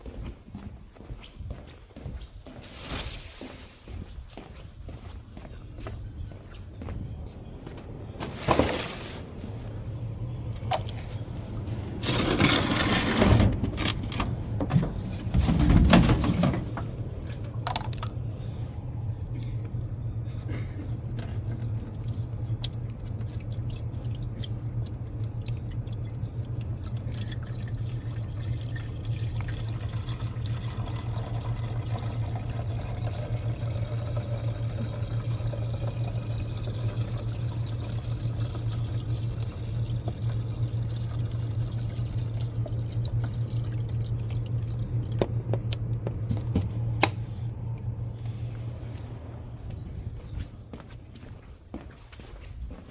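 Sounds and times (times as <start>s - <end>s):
steady low hum: 3.0s - 52.9s
water pouring and trickling: 8.2s - 14.2s, 21.1s - 45.2s.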